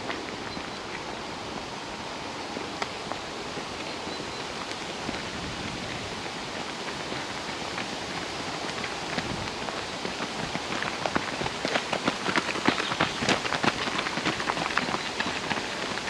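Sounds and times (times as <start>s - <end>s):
wind rushing through trees: 0.0s - 16.0s.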